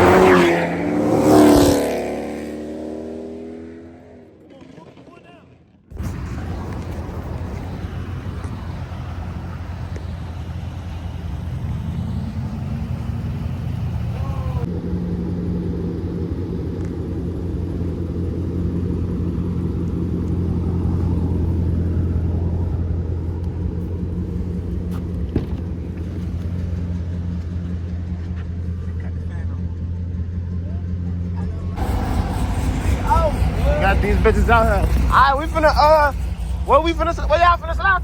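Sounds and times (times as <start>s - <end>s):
car engine droning: 0.0s - 38.0s
road rumble: 0.0s - 38.0s.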